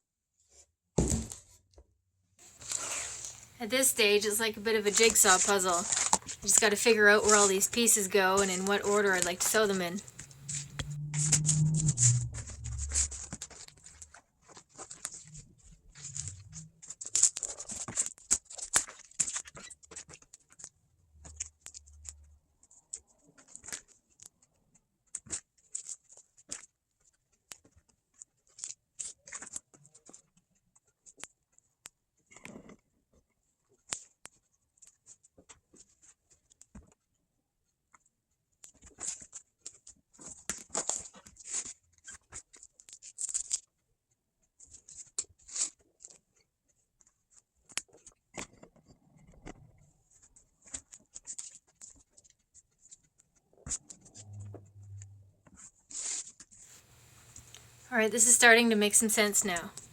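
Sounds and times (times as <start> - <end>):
vinyl material rustling and scraping: 2.4 - 7.5, 8.4 - 18.1, 50.1 - 59.9.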